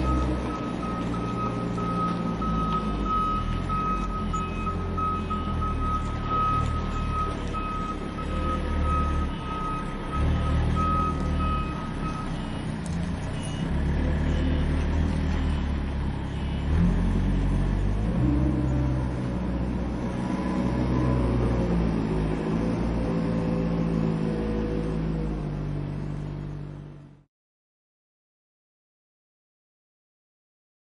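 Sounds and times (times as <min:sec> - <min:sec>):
reverse alarm beeping: 0:00.0 - 0:12.7
forklift engine running: 0:00.0 - 0:27.2.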